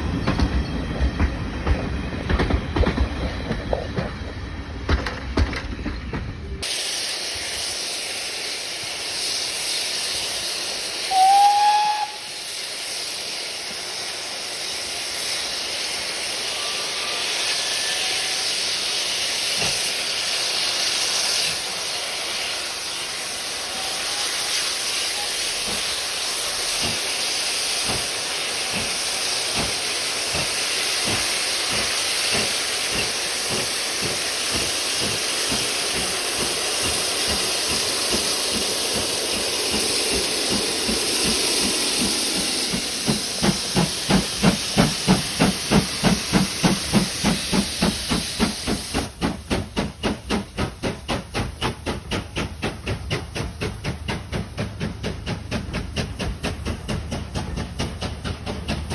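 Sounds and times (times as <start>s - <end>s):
steam locomotive hissing: 0.0s - 58.9s
train whistle toot: 11.0s - 12.5s, 16.4s - 18.8s, 23.6s - 25.8s.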